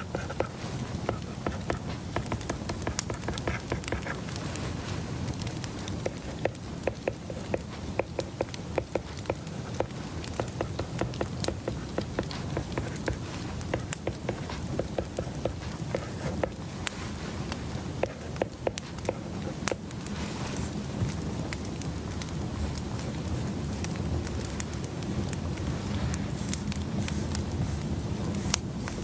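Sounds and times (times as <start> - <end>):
steady background hiss: 0.0 - 29.0.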